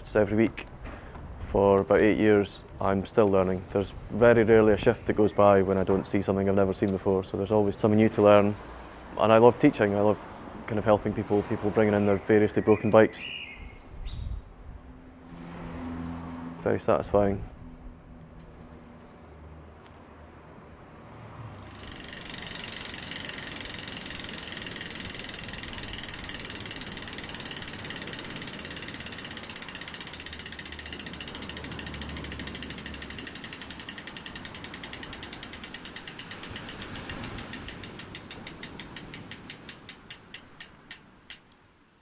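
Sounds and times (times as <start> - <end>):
bicycle freewheel ticking: 21.6 - 41.5.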